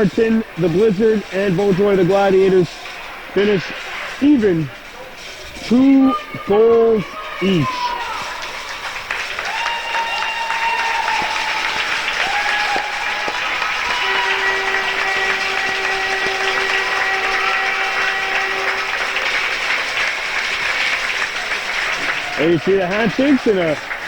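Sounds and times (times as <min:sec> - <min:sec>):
horn blasts: 0:00.0 - 0:08.0, 0:08.8 - 0:24.0
crowd clapping and cheering: 0:00.0 - 0:24.0
long low horn: 0:11.0 - 0:23.2.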